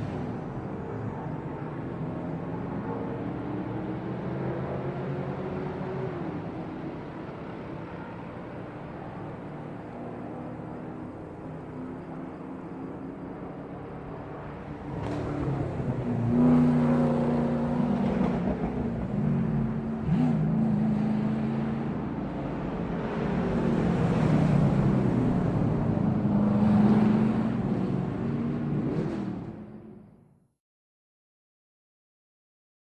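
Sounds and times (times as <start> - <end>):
racing car engines revving: 14.8 - 29.7.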